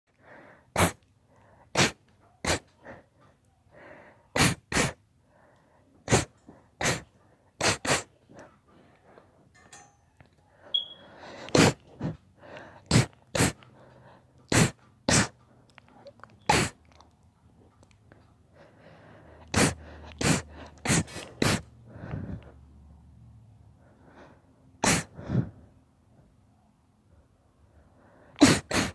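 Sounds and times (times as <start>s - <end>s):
girl sneezing: 1.8s - 2.7s, 4.4s - 5.0s, 7.6s - 8.1s, 14.5s - 15.4s, 16.5s - 16.8s, 19.6s - 21.6s, 24.8s - 25.2s, 28.4s - 28.9s.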